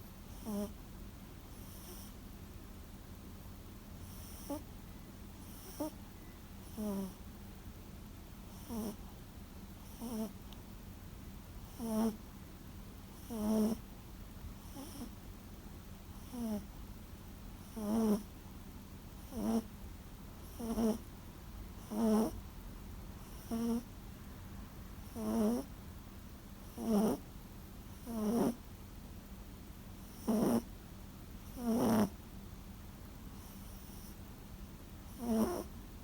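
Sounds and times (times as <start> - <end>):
dog snoring: 0.3 - 0.8, 1.5 - 2.2, 4.0 - 4.7, 5.4 - 6.0, 6.6 - 7.2, 8.5 - 9.2, 9.8 - 10.4, 11.6 - 12.2, 13.1 - 13.8, 14.6 - 15.2, 16.2 - 16.7, 17.6 - 18.3, 19.2 - 19.7, 20.4 - 21.1, 21.8 - 22.4, 23.2 - 23.9, 25.0 - 25.7, 26.6 - 27.2, 27.9 - 28.6, 30.0 - 30.7, 31.4 - 32.2, 33.4 - 34.2, 35.1 - 35.8.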